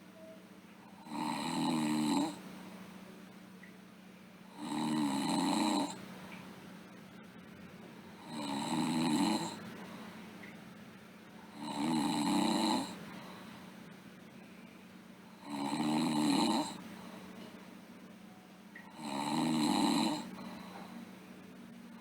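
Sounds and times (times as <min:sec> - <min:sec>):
faint steady hum: 0:00.0 - 0:22.0
girl snoring: 0:01.0 - 0:02.4, 0:04.5 - 0:06.0, 0:08.1 - 0:09.6, 0:11.5 - 0:13.0, 0:15.4 - 0:16.8, 0:18.9 - 0:20.7.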